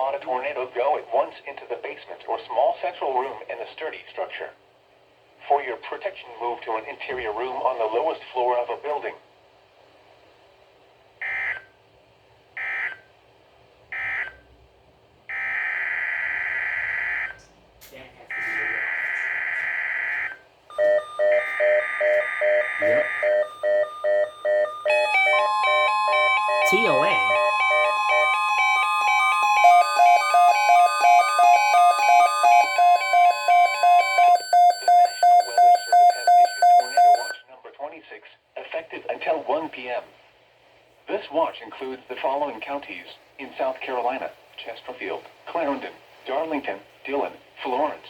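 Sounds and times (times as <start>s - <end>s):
steady warning alert tone: 20.7s - 36.8s
alarm beeping rapidly: 20.7s - 37.4s.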